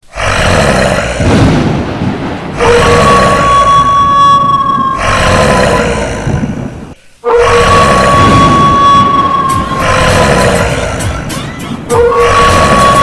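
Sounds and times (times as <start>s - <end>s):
loud rumbling hissing din: 0.0s - 13.0s
eerie held tone: 2.6s - 5.1s, 7.2s - 13.0s.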